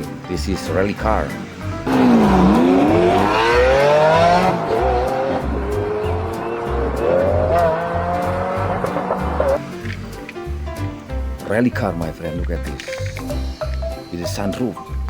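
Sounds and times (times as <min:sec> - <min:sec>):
background music with steady beat: 0:00.0 - 0:15.0
race car engine revving: 0:01.8 - 0:09.6.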